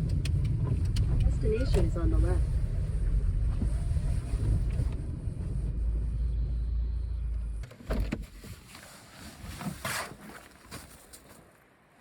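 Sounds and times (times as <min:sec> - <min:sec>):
car engine rumbling: 0:00.0 - 0:08.6.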